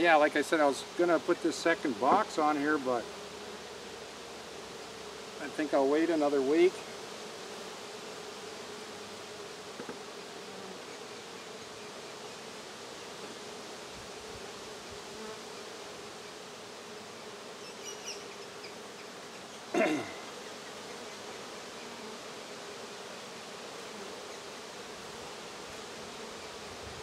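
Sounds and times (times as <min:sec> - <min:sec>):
bees buzzing: 0:00.0 - 0:27.0.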